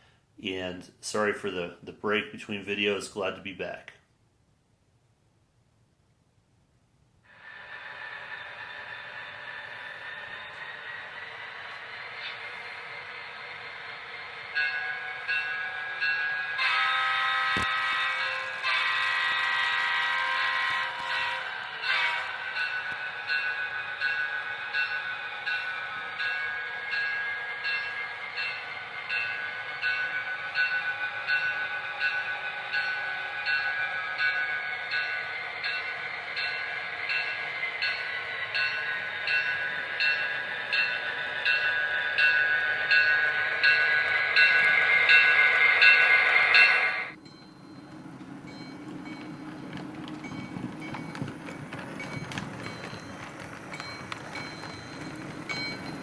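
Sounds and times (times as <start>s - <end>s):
model train motor whine: 7.3s - 47.2s
regular clicks of model train: 7.3s - 56.0s.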